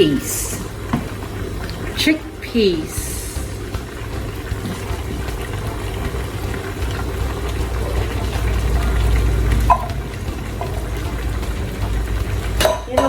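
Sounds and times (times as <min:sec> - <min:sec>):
stew simmering and bubbling: 0:00.0 - 0:13.0.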